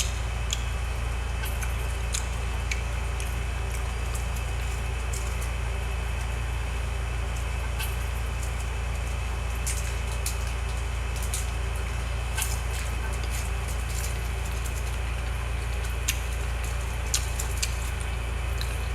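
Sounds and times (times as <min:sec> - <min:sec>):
loud steady low hum: 0:00.0 - 0:18.9
crunchy chewing: 0:07.3 - 0:18.9.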